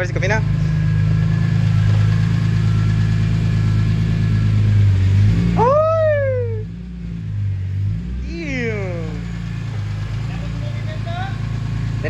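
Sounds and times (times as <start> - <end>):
car engine idling: 0.0 - 12.0
short high cry: 5.6 - 6.7.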